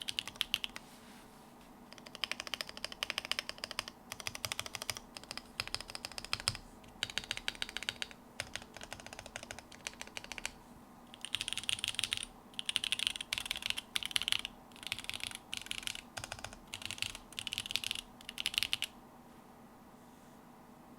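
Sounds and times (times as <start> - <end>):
mechanical keyboard typing: 0.0 - 0.8, 1.9 - 18.9.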